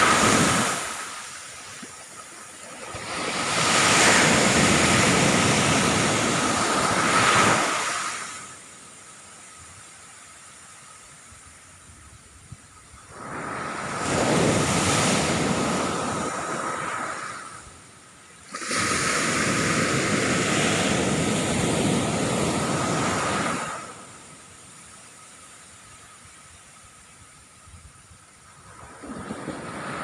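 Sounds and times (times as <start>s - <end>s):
ocean waves breaking on beach: 0.0s - 9.0s, 13.0s - 24.9s, 28.4s - 30.0s.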